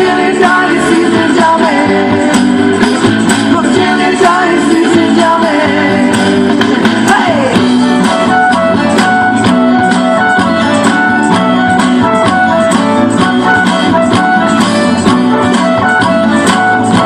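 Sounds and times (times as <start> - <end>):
person singing: 0.0 - 2.7, 3.5 - 8.1
rock guitar: 0.0 - 17.0.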